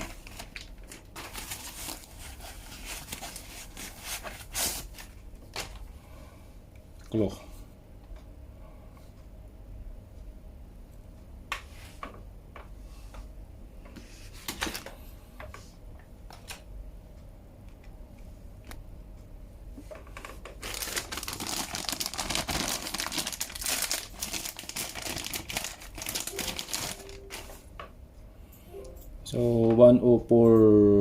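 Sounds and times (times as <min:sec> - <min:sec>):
plastic packaging crinkling: 0:00.0 - 0:05.8, 0:20.2 - 0:27.6.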